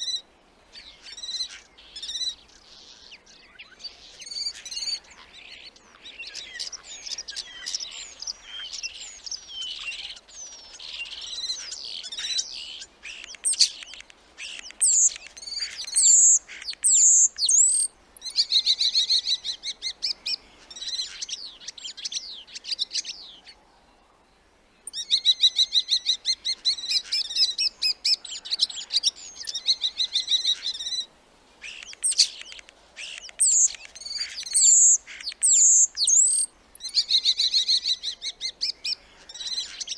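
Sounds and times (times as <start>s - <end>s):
starling singing: 11.1s - 19.9s, 24.9s - 39.9s.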